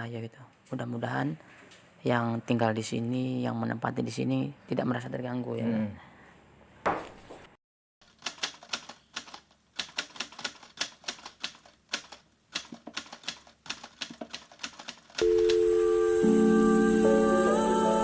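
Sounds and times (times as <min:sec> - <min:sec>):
typewriter key clicks: 0:08.1 - 0:15.2
music: 0:15.2 - 0:18.0.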